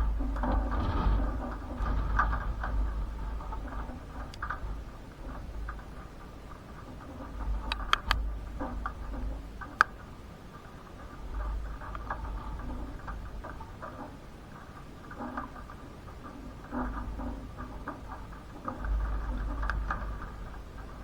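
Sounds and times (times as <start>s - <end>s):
low thunder rumble: 0.0s - 6.4s
rain pattering: 0.0s - 21.0s.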